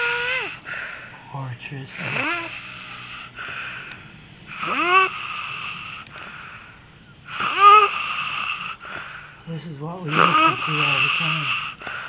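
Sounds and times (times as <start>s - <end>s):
woman snoring: 0.0s - 0.6s, 2.0s - 3.4s, 4.5s - 6.1s, 7.3s - 8.9s, 10.1s - 11.8s.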